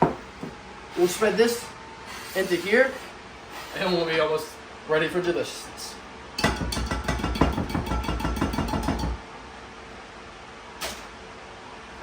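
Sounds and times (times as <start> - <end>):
utensil knocking against bowl: 6.4 - 9.2.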